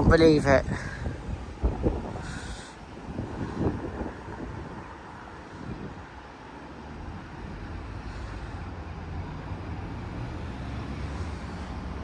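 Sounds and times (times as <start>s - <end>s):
road traffic noise: 0.0s - 12.0s.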